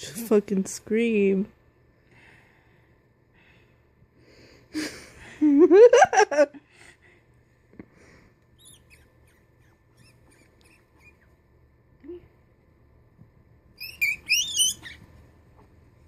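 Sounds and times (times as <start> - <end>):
guinea pig squealing: 8.6 - 11.4, 13.8 - 15.2.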